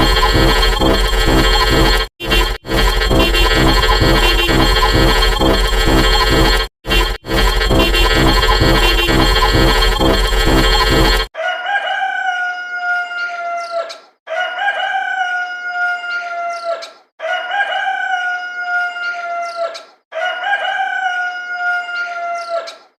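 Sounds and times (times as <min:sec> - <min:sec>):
rooster crowing: 0:11.4 - 0:13.3, 0:14.3 - 0:16.3, 0:17.2 - 0:19.5, 0:20.1 - 0:22.4.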